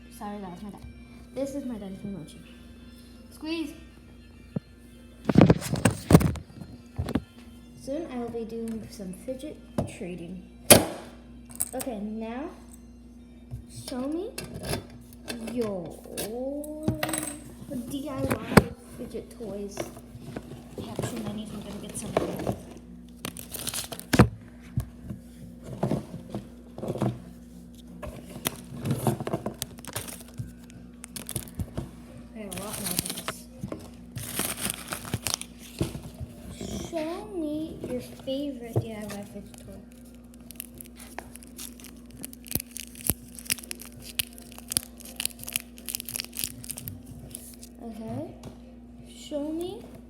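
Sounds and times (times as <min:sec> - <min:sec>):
low steady hum: 0:00.0 - 0:50.0
things being moved about: 0:15.4 - 0:42.6
fidget toy crackling and clicking: 0:39.2 - 0:47.6.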